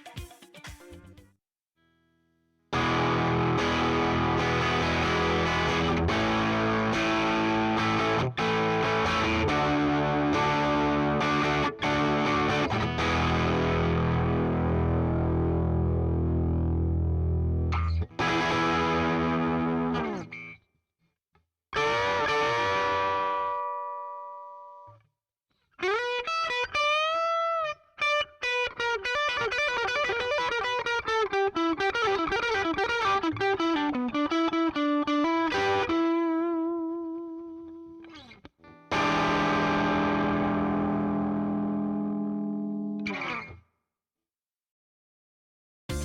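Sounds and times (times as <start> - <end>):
distorted electric guitar: 2.7 - 20.6, 21.8 - 24.9, 28.5 - 43.6.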